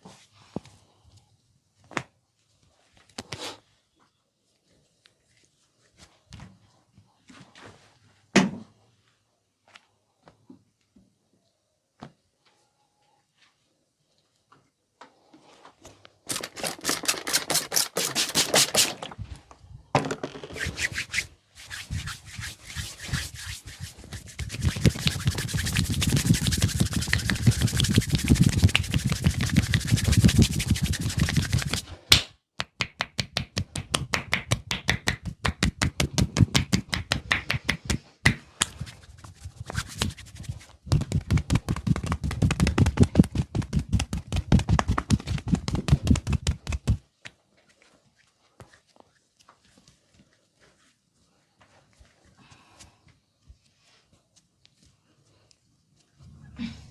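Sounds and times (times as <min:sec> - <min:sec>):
vigorous rubbing: 0:20.4 - 0:32.0, 0:35.2 - 0:47.0
hands slapping skin: 0:20.5 - 0:47.4.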